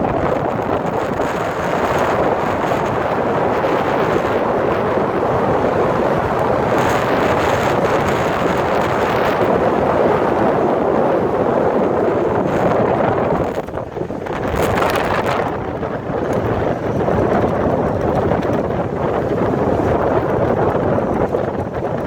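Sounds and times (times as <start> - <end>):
strong wind on microphone: 0.0 - 22.0.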